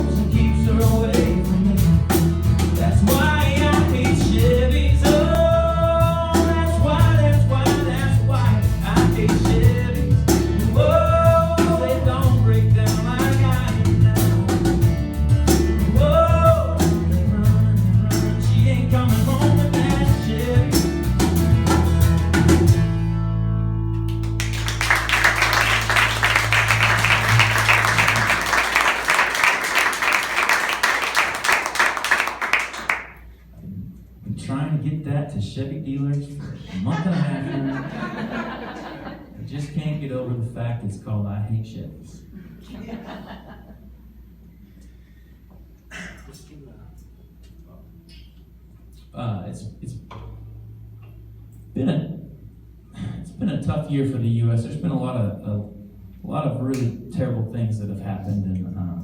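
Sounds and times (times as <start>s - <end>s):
man singing: 0.0s - 1.9s, 2.8s - 14.8s, 15.8s - 21.0s
guitar: 0.0s - 30.0s
audience applause: 24.1s - 33.2s.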